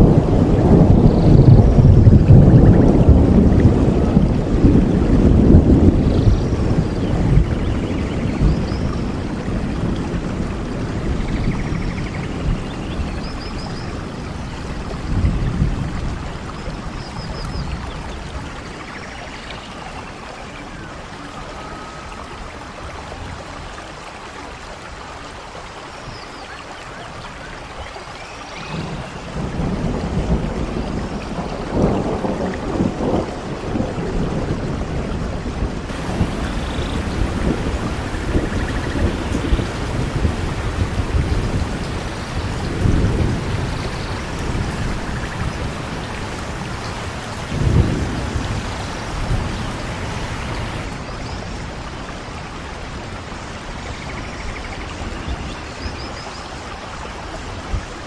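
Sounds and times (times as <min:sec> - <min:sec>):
rolling thunder: 0:00.0 - 0:11.2, 0:29.3 - 0:51.0
heavy rain: 0:00.0 - 0:53.8
faint birds chirping: 0:35.9 - 0:50.9.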